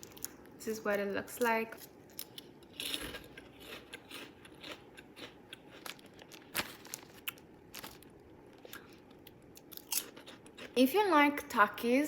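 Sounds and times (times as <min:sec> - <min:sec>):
crunching and chewing corn chips: 0:01.8 - 0:10.8.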